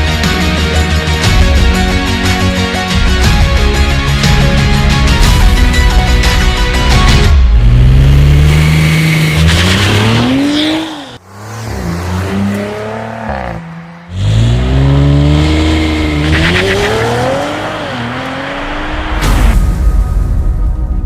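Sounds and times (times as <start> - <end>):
car engine revving: 7.4 - 19.5.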